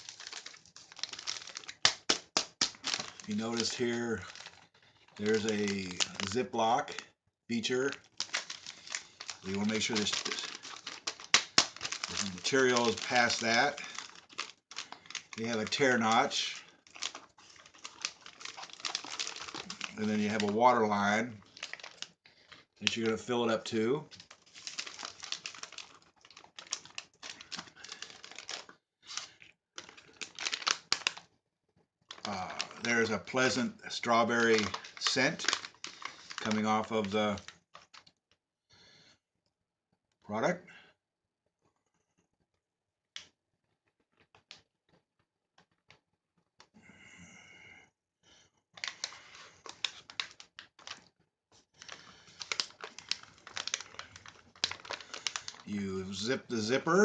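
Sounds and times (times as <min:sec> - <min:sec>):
plastic pouch crinkling: 0:00.0 - 0:31.3, 0:32.1 - 0:38.1, 0:48.8 - 0:51.1, 0:51.7 - 0:57.0.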